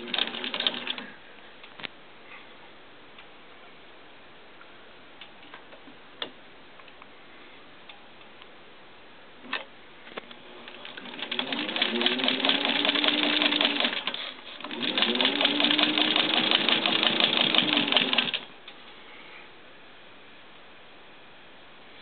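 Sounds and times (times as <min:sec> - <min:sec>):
sewing machine stitching: 0:00.0 - 0:01.1, 0:10.6 - 0:18.5.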